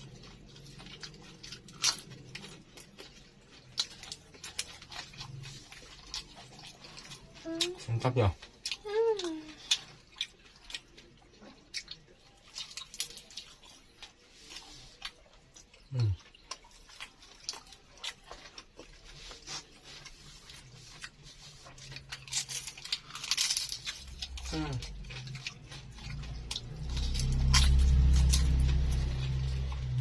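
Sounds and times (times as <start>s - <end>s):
person chewing crispy food: 0.0s - 30.0s
low vocal hum: 15.9s - 16.2s, 24.0s - 30.0s.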